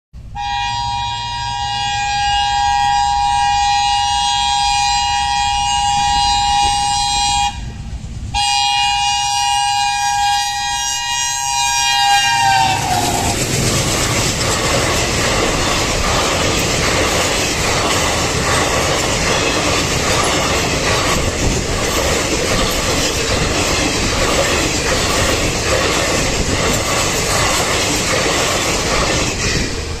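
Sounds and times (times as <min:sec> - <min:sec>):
train coaches rumbling by: 0:00.2 - 0:30.0
locomotive horn blast: 0:00.3 - 0:13.4
train wheel clatter: 0:11.2 - 0:30.0.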